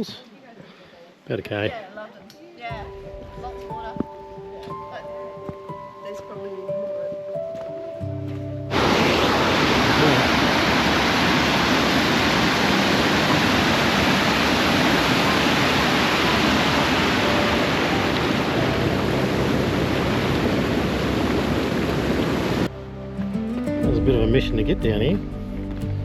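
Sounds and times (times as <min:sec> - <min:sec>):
waterfall roaring: 0:08.7 - 0:22.7.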